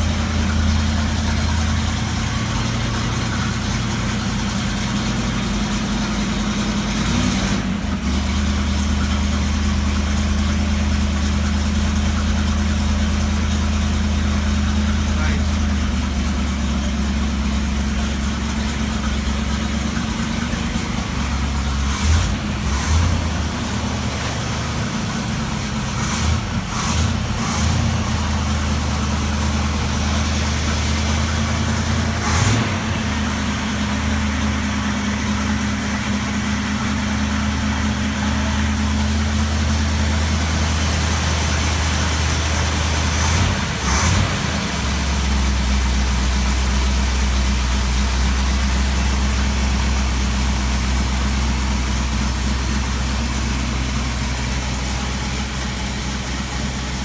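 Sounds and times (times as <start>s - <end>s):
car engine idling: 0.0s - 57.0s.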